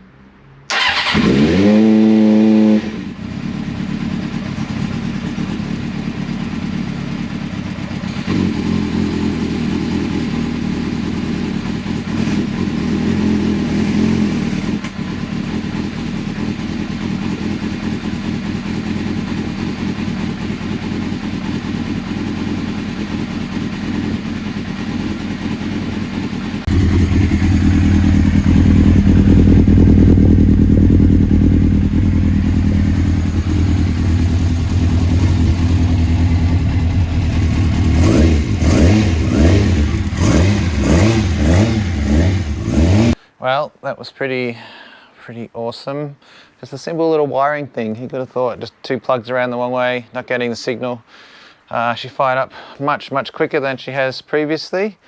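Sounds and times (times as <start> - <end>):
motorcycle engine starting and revving: 0.7 - 43.2.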